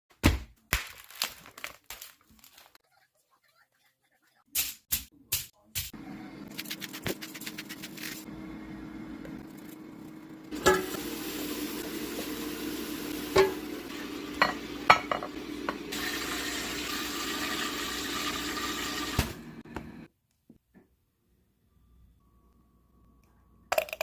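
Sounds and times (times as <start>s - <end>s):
burger sizzling: 6.0s - 20.0s.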